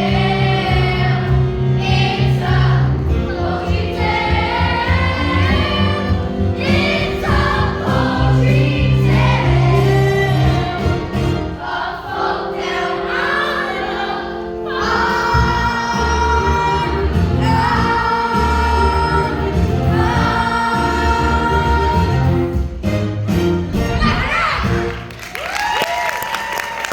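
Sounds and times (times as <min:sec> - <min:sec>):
choir singing: 0:00.0 - 0:22.8.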